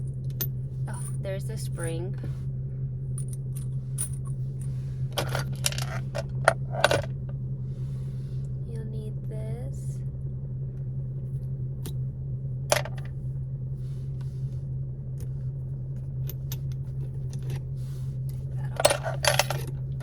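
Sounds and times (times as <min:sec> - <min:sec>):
steady low hum: 0:00.0 - 0:20.0
parts clattering: 0:03.2 - 0:07.1, 0:16.2 - 0:20.0.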